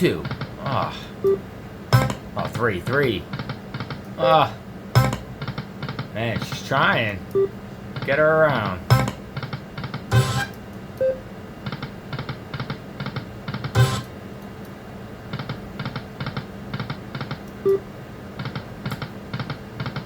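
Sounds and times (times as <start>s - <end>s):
slot machine reels ticking: 1.9s - 2.2s, 5.0s - 5.6s, 8.9s - 9.2s, 10.1s - 11.2s, 13.7s - 14.1s
sharp electronic hit: 5.0s - 5.3s.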